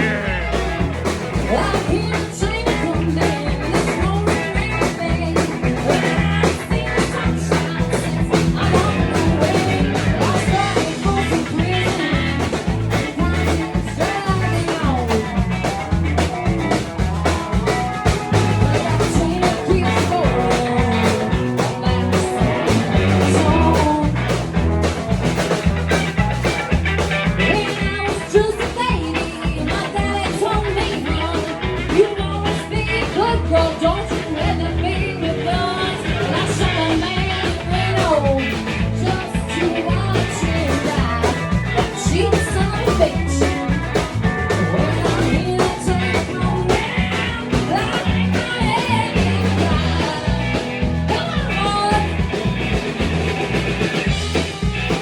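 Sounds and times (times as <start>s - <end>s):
person singing: 0.0s - 24.7s, 27.0s - 53.2s
rock and roll band playing: 0.0s - 55.0s.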